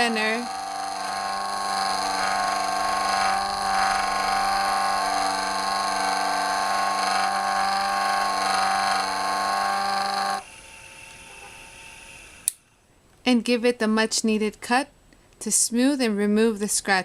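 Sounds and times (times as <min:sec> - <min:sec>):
polishing machine motor whine: 0:00.0 - 0:12.5.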